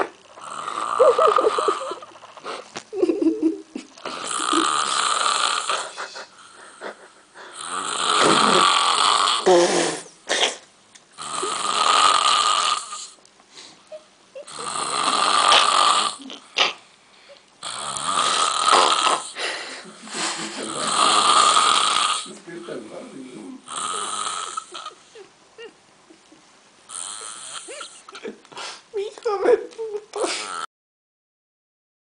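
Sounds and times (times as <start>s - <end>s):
man snoring loudly: 0.0s - 1.9s, 4.1s - 6.0s, 7.5s - 10.0s, 11.2s - 13.2s, 14.5s - 16.3s, 17.6s - 19.4s, 20.5s - 22.3s, 23.6s - 24.9s, 26.9s - 27.9s.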